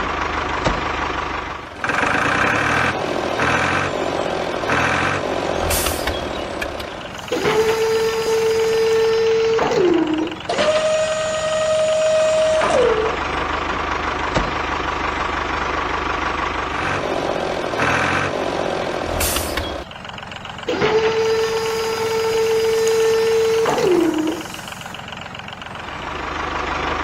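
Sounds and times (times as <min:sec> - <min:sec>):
truck engine running: 0:00.0 - 0:27.0
truck horn blast: 0:21.0 - 0:24.5.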